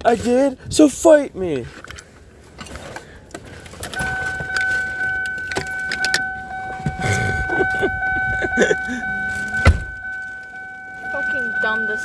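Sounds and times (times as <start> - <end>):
jangling: 3.7 - 10.7
steady electronic beep: 4.0 - 12.0.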